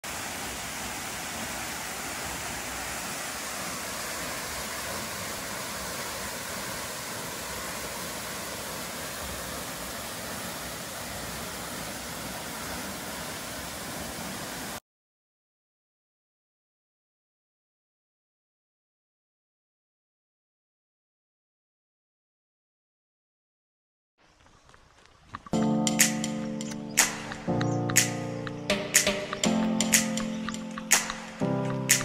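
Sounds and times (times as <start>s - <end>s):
waterfall rushing: 0.0s - 14.8s, 25.8s - 32.0s.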